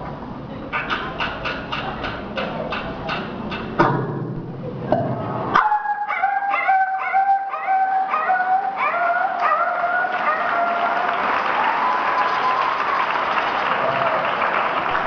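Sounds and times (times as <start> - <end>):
audience applause: 8.6 - 15.0.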